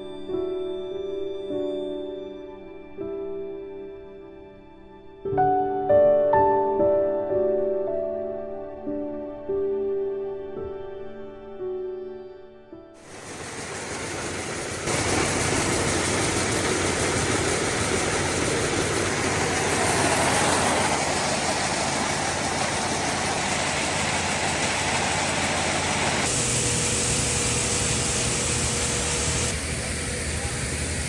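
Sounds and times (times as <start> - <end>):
farm machinery running: 13.0 - 31.0
steady whine: 13.0 - 31.0.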